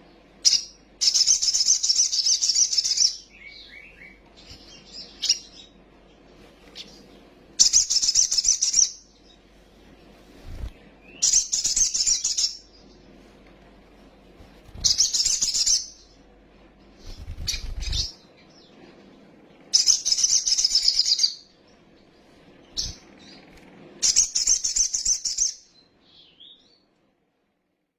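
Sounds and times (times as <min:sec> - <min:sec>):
faint low hum: 0:00.0 - 0:27.9
sunbird chattering song: 0:00.4 - 0:05.8, 0:06.7 - 0:09.4, 0:10.5 - 0:13.0, 0:14.8 - 0:16.2, 0:17.0 - 0:18.7, 0:19.7 - 0:21.5, 0:22.7 - 0:26.7.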